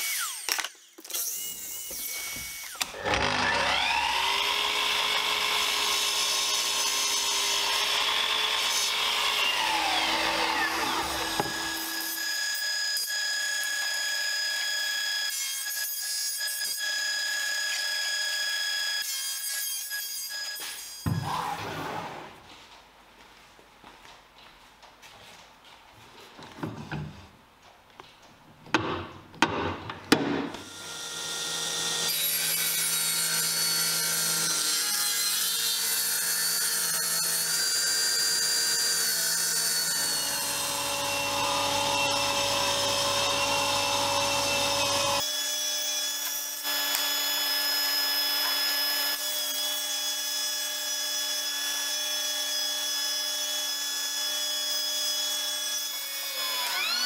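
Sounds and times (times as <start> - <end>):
power tool working wood: 0.0 - 15.3, 30.6 - 50.2, 51.3 - 57.0.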